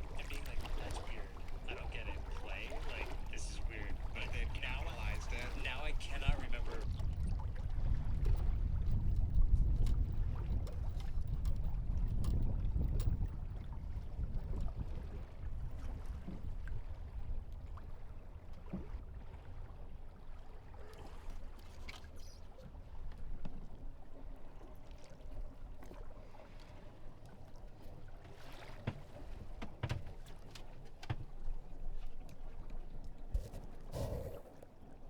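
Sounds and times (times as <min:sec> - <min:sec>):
low wind rumble: 0:00.0 - 0:18.1
water swishing along hull: 0:00.0 - 0:35.0.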